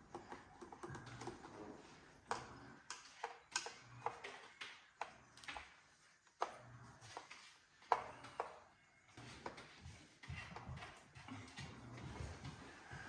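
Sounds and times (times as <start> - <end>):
light clicks and taps of plastic parts: 0.0 - 8.6.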